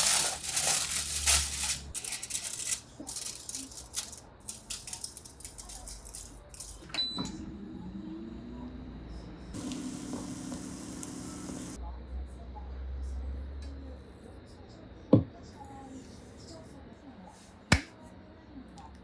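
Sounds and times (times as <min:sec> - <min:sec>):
objects clattering and rustling: 0:00.0 - 0:06.8.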